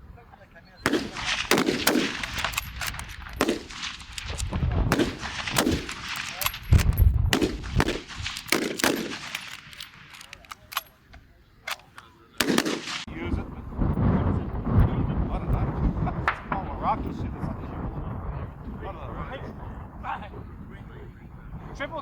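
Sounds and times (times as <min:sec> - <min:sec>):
rifle shots cracking: 0:00.8 - 0:10.9, 0:11.7 - 0:13.1.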